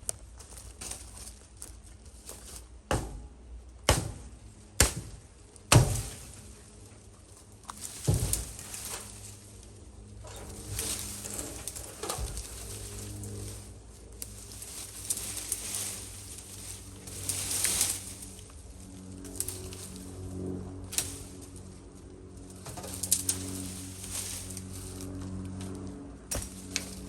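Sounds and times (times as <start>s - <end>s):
sharp knocks and thuds: 2.9s - 6.4s, 8.0s - 8.7s
rustling: 4.4s - 27.0s.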